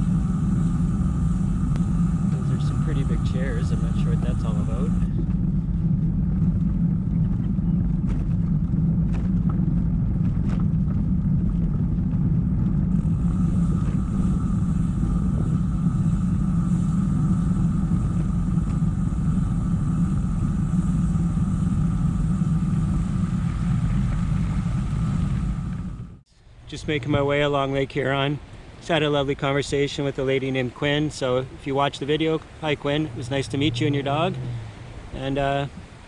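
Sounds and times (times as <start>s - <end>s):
bicycle road noise: 0.0s - 36.0s
faint steady whine: 0.0s - 36.0s
wind rumble on microphone: 0.0s - 36.0s.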